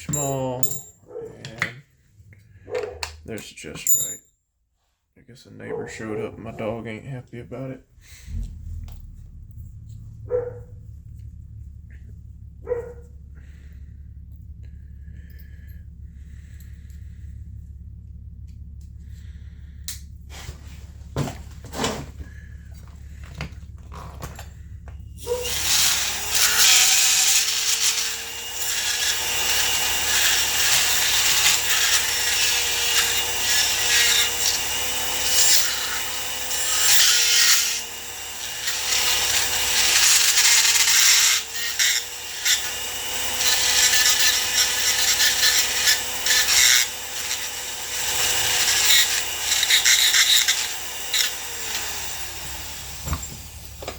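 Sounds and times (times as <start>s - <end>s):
tool working noise: 0.0s - 4.2s, 18.8s - 53.9s
power tool motor whine: 19.1s - 53.9s.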